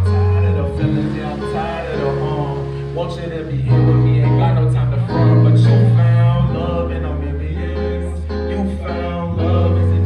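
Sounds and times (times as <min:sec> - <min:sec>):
live band playing: 0:00.0 - 0:06.9
person singing: 0:00.0 - 0:10.0.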